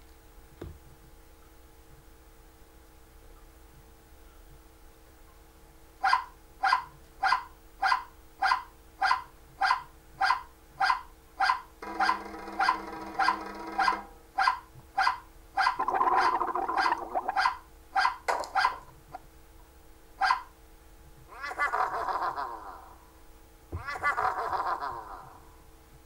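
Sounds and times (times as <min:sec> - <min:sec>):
dog barking: 0:06.0 - 0:12.8, 0:13.8 - 0:15.8, 0:17.3 - 0:18.9, 0:20.2 - 0:20.5.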